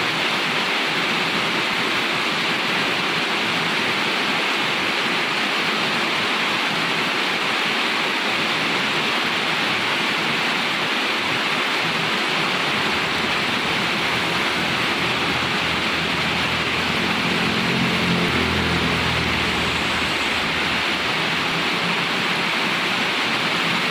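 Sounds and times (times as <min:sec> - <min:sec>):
rain hissing: 0:11.6 - 0:23.5
motor vehicle engine rumble: 0:11.8 - 0:23.3.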